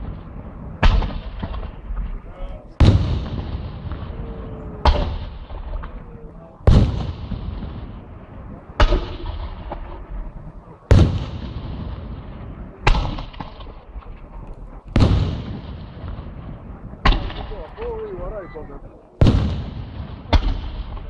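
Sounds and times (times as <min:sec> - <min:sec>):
firecracker bangs with echo: 0:00.0 - 0:06.0, 0:06.6 - 0:10.3, 0:10.9 - 0:13.8, 0:14.9 - 0:17.9, 0:19.2 - 0:21.0.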